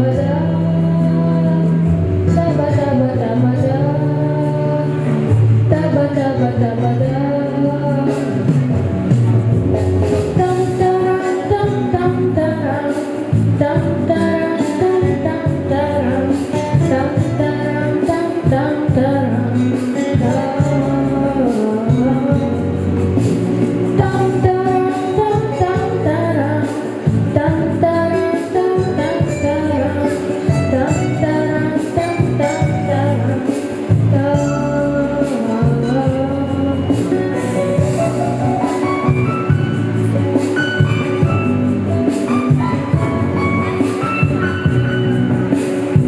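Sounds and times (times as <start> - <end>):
boy singing: 0.0 - 8.8, 10.3 - 22.9, 24.0 - 38.8
pop backing track: 0.0 - 46.0.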